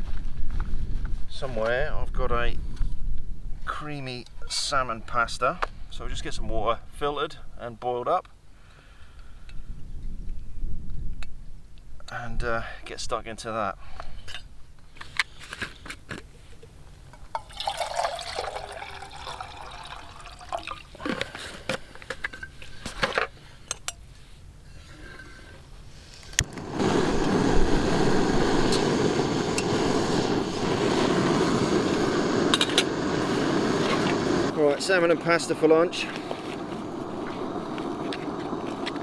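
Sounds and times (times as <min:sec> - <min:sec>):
water pouring: 0:17.3 - 0:21.2
camping stove burner hissing: 0:17.5 - 0:23.7, 0:24.8 - 0:39.0.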